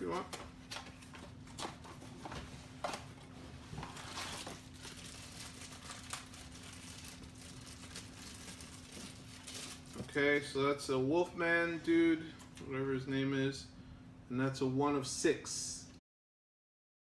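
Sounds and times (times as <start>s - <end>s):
cardboard packaging crinkling: 3.6s - 10.2s.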